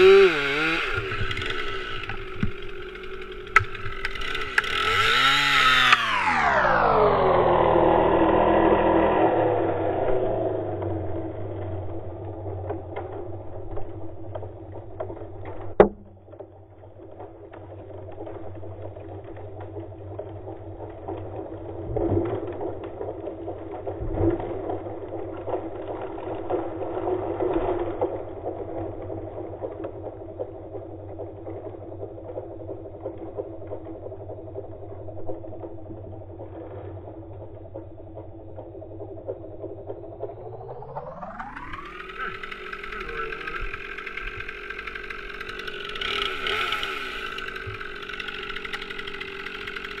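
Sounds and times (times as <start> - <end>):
chainsaw engine running: 0.0 - 12.2, 40.0 - 50.0.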